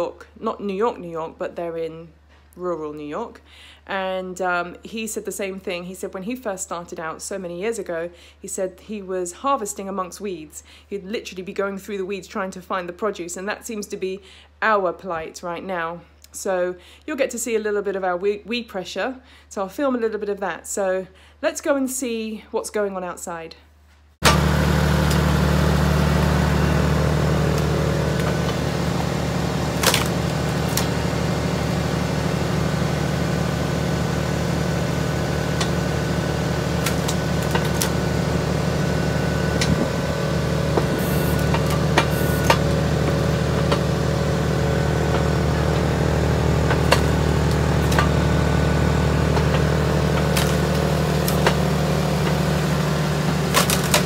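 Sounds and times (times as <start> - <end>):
machine engine running: 24.2 - 54.0.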